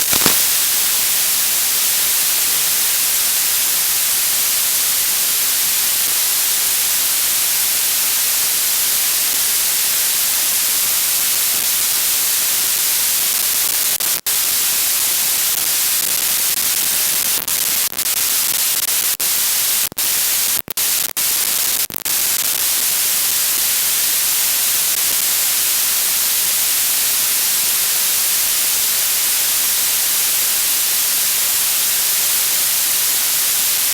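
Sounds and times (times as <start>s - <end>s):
loud static hiss: 0.0s - 16.5s.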